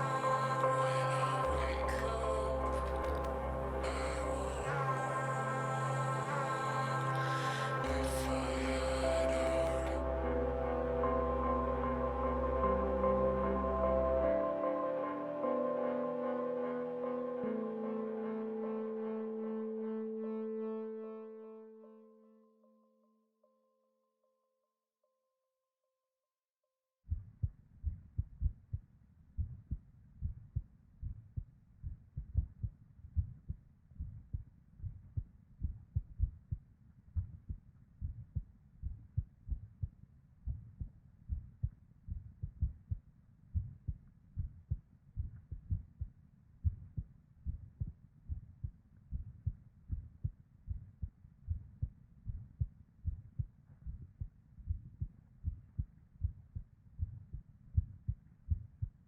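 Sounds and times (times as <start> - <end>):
heartbeat thumps: 27.1 - 28.8, 29.4 - 59.0.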